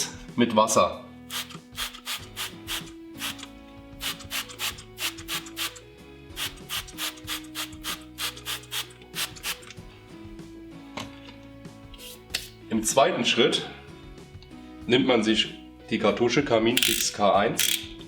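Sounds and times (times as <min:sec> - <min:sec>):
background music: 0:00.0 - 0:18.0
spray bottle squirting water: 0:01.3 - 0:05.8, 0:06.4 - 0:09.8, 0:12.0 - 0:12.6.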